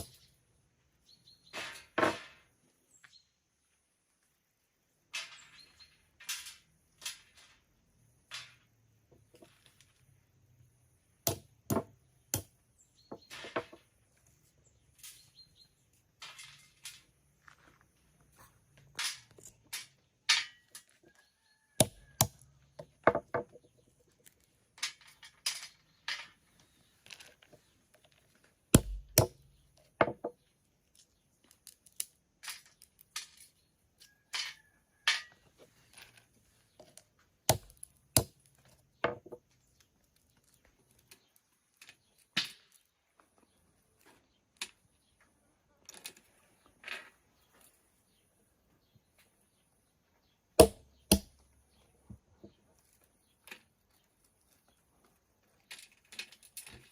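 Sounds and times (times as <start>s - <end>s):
knocks of food preparation: 28.8s - 29.4s.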